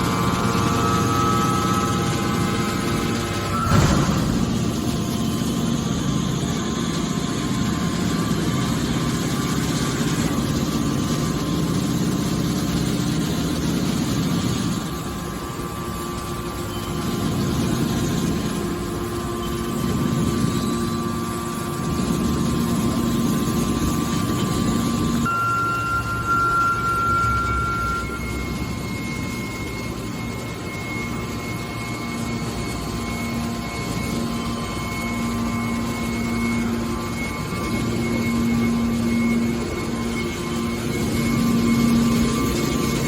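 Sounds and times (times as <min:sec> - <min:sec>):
baler machinery drone: 0:00.0 - 0:43.0.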